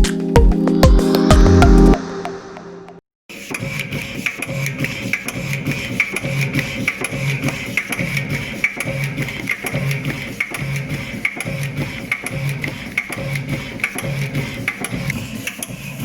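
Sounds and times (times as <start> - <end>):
music with percussive beat: 0.0 - 2.4
woodblock-like ticks: 3.6 - 16.0.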